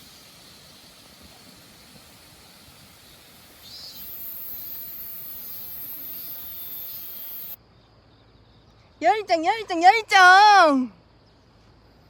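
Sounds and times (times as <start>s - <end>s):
outdoor hiss: 0.0s - 7.6s
high insect buzz: 3.0s - 7.6s.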